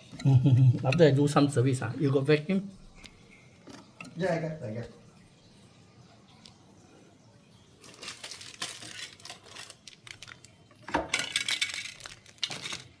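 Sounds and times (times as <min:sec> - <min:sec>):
small hard objects clinking: 0:07.8 - 0:13.0.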